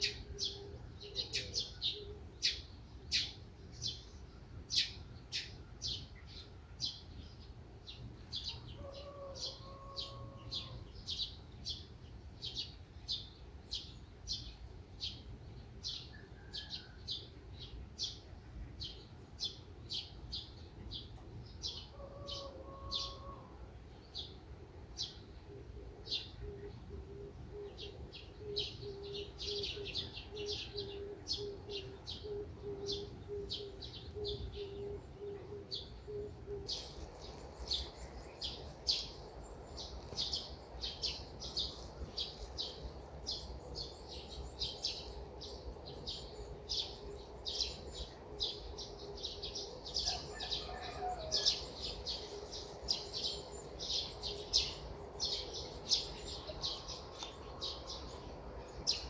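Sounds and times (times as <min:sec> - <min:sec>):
small birds chirping: 0:26.0 - 0:59.0.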